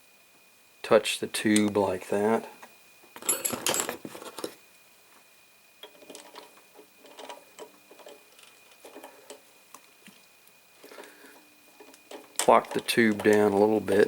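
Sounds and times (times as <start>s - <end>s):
metal lathe parts clicking and rattling: 5.8s - 9.4s, 11.0s - 14.0s.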